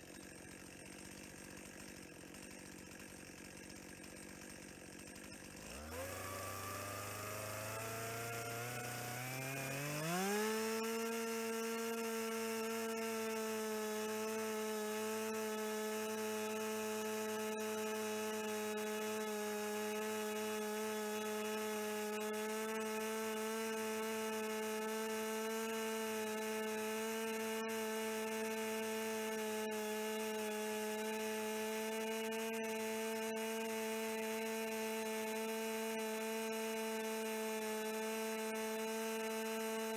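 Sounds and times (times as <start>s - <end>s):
motor whining: 5.1s - 25.0s.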